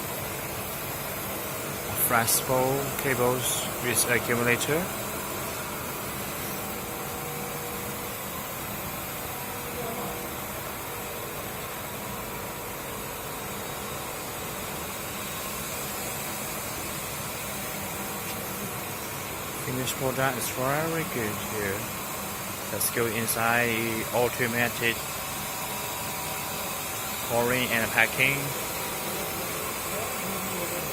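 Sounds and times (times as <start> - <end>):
faint machine whines: 0.0 - 30.9.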